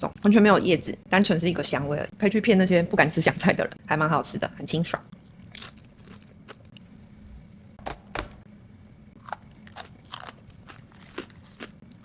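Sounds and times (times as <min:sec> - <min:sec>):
crunchy food chewing: 0:05.1 - 0:06.8, 0:09.2 - 0:12.0.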